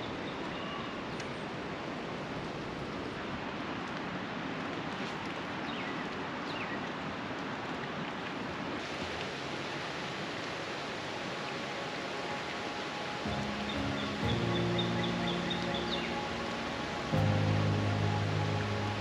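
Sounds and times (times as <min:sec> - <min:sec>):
rain hiss: 0:01.9 - 0:19.0
music: 0:11.6 - 0:19.0
bird chirps: 0:13.3 - 0:19.0.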